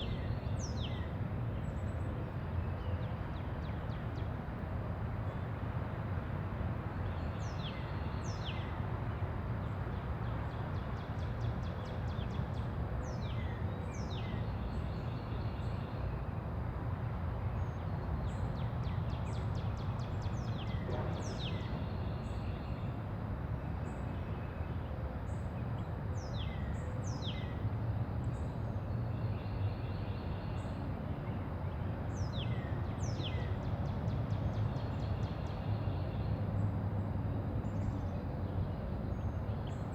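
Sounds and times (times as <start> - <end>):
distant traffic rumble: 16.6 - 24.1.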